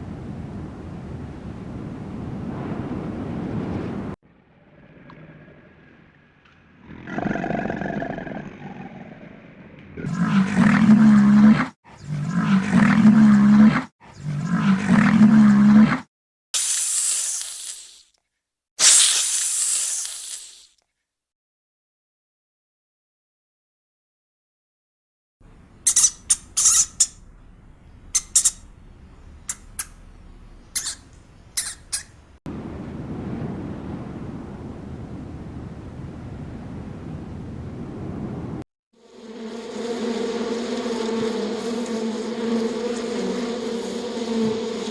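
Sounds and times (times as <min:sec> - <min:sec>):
big cat roaring: 0:04.5 - 0:16.1
small animal squeaking: 0:25.8 - 0:27.3, 0:28.0 - 0:28.8, 0:29.4 - 0:32.3.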